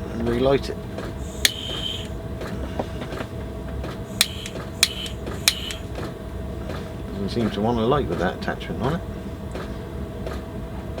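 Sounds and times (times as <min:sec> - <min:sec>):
heater drone: 0:00.0 - 0:06.6
piezo igniter clicking: 0:01.2 - 0:02.2, 0:04.1 - 0:05.9.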